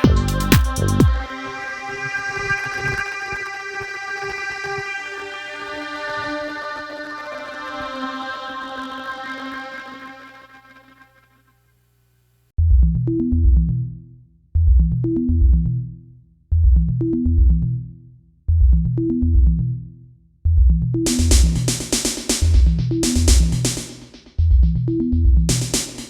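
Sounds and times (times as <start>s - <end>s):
bright hi-hats: 0.0s - 1.2s, 21.1s - 24.4s, 25.5s - 26.0s
deep kick drum and bass: 0.0s - 1.3s, 12.6s - 26.0s.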